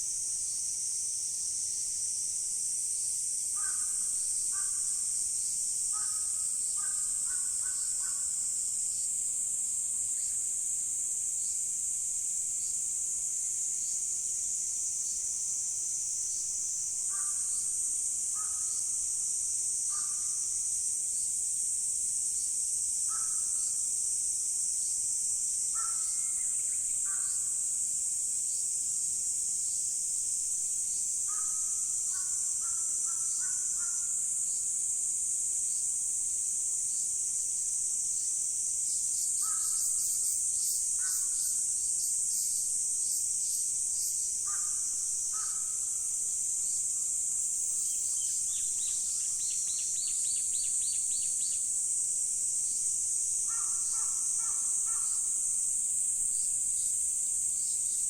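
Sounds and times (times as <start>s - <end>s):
insects singing: 38.9s - 58.0s.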